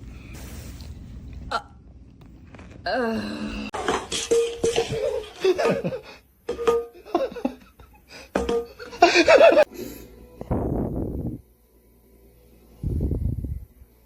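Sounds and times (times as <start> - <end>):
background music: 6.5 - 14.0
person laughing: 8.8 - 9.7.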